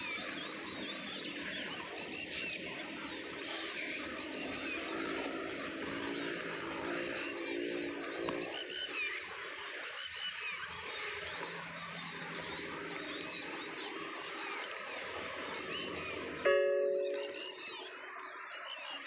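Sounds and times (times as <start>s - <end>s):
birds chirping: 0.0s - 19.0s
droning tone: 16.4s - 18.2s.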